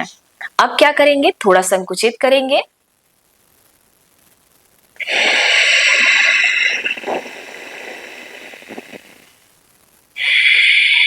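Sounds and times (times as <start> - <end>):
hissing throat breathing: 5.0 - 9.4, 10.2 - 11.0.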